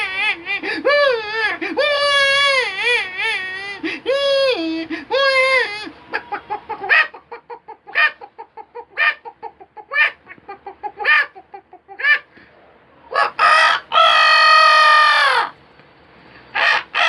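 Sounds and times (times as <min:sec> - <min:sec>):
man imitating rooster crow: 0:00.0 - 0:06.0, 0:13.2 - 0:15.6
man imitating chicken clucks: 0:00.0 - 0:12.4, 0:13.1 - 0:15.6, 0:16.6 - 0:17.0.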